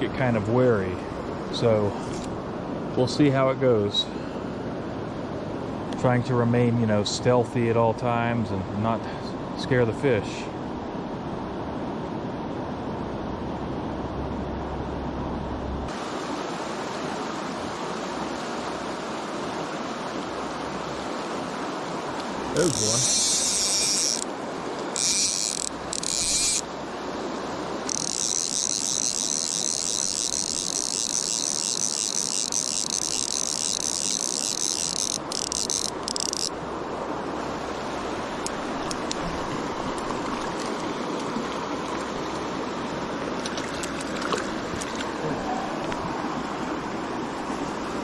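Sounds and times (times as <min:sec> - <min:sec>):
river rushing: 0:00.0 - 0:48.0
fly reel buzzing: 0:22.5 - 0:26.8, 0:27.8 - 0:36.6.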